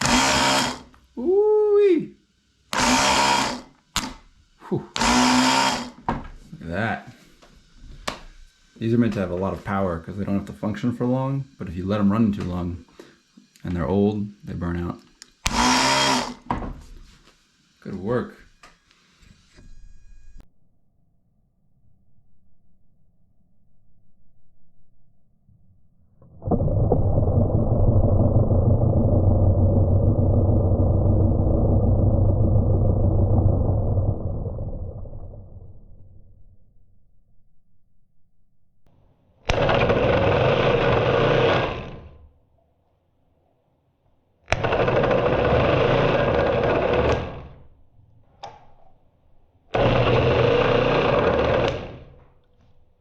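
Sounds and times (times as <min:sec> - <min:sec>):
starter motor spinning: 0:00.0 - 0:01.0, 0:02.5 - 0:04.3, 0:04.9 - 0:06.0, 0:11.1 - 0:16.5, 0:26.3 - 0:36.2, 0:39.5 - 0:42.3, 0:44.5 - 0:47.8, 0:49.7 - 0:52.3
starter motor click: 0:44.5 - 0:47.5, 0:49.8 - 0:52.2.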